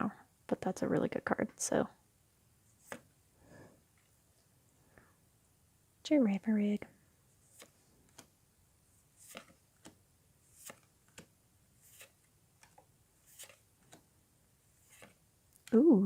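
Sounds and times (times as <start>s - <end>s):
trading cards sliding: 2.7s - 3.1s, 7.4s - 8.4s, 9.0s - 14.1s, 14.7s - 15.2s.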